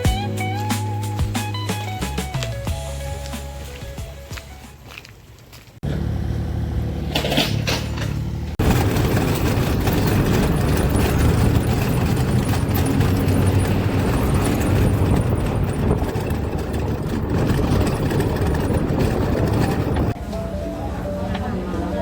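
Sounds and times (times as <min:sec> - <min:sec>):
vehicle engine running: 0:05.8 - 0:20.2.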